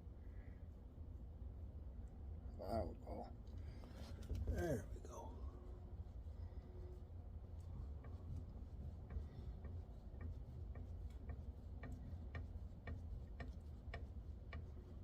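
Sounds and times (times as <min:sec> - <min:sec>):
steady mechanical clicking: 0:07.6 - 0:15.0.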